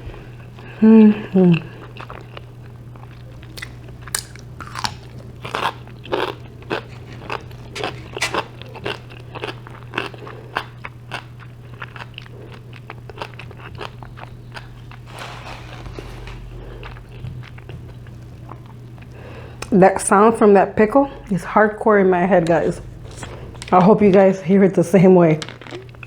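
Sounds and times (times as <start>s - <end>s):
steady low hum: 0.0s - 26.0s
crunchy pickle chewing: 1.6s - 19.7s.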